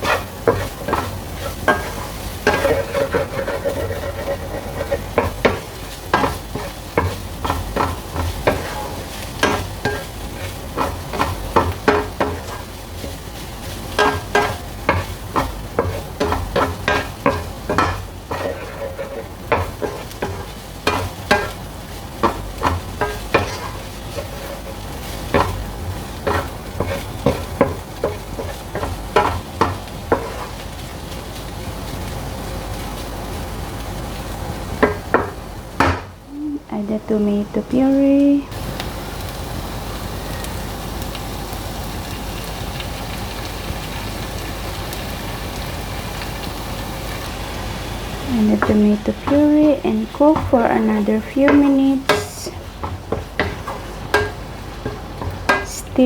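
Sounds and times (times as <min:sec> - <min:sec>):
utensil tapping a pan: 0:00.0 - 0:13.2, 0:13.9 - 0:30.6, 0:34.8 - 0:36.2, 0:48.4 - 0:56.0
utensil scraping a pan: 0:00.0 - 0:30.7, 0:48.3 - 0:56.0
meat sizzling in a frying pan: 0:00.0 - 0:56.0.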